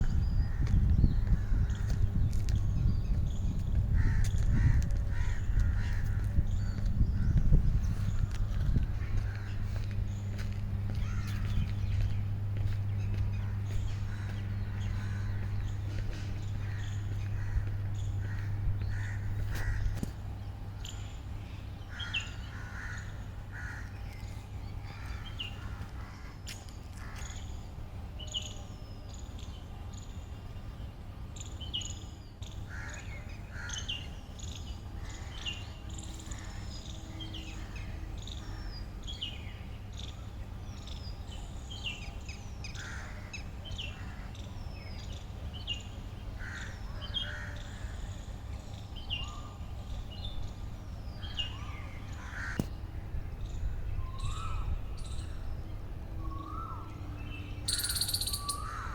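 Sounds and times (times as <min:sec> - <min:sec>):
birds chirping and calling: 0:00.0 - 0:30.2, 0:31.4 - 0:58.9
low hum: 0:00.0 - 0:30.8, 0:45.8 - 0:58.9.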